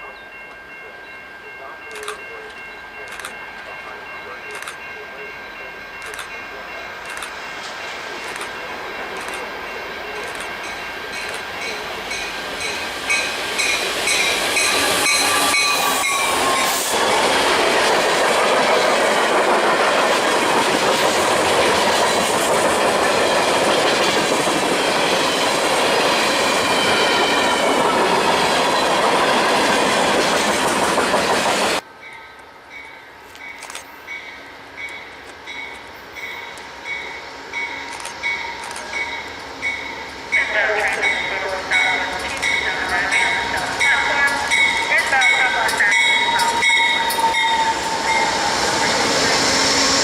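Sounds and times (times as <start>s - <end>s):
train wheels clicking over rails: 7.0s - 31.8s.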